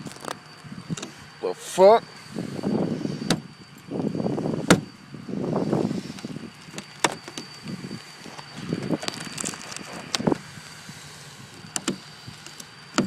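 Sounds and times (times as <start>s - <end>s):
truck door straining: 3.2s - 3.5s, 4.6s - 4.9s, 6.1s - 7.7s, 11.5s - 13.0s.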